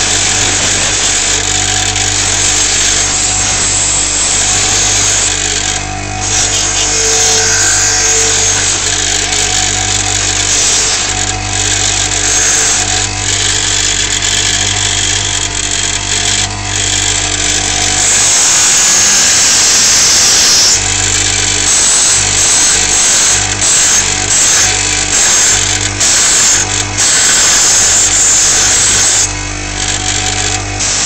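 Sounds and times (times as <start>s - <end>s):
gritty grinding hiss: 0.0s - 20.8s
power tool motor hum: 0.0s - 31.0s.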